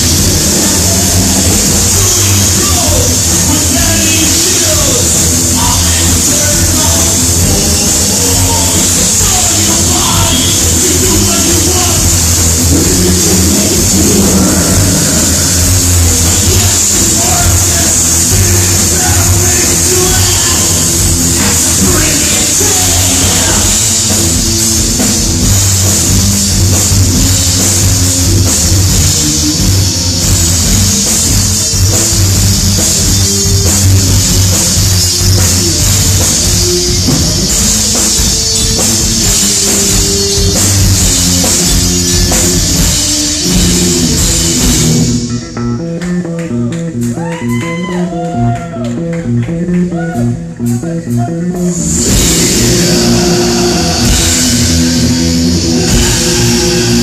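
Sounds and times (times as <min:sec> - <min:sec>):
drums and cymbals: 0:00.0 - 0:45.8, 0:50.0 - 0:57.0
bass guitar: 0:00.0 - 0:57.0
distorted electric guitars: 0:00.0 - 0:57.0.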